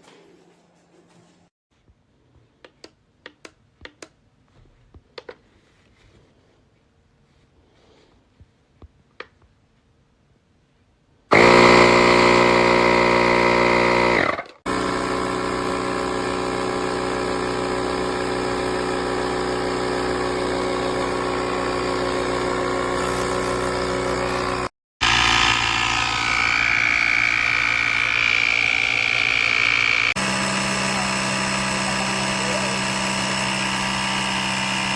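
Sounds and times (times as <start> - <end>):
air compressor running: 11.3 - 34.9.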